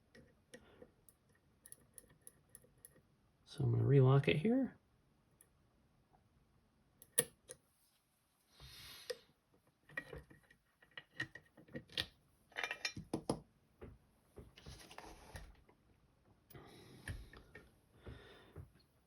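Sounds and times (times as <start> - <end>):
lock and picking tools clicking: 0.0 - 3.0, 7.0 - 7.6.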